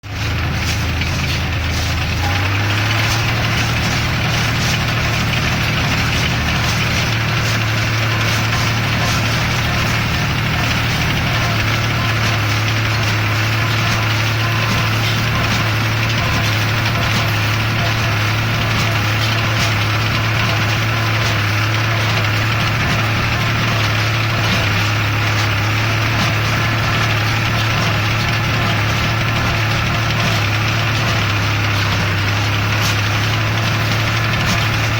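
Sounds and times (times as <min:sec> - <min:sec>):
baler mechanism clatter: 0:00.0 - 0:34.9
tractor engine drone: 0:00.0 - 0:34.9.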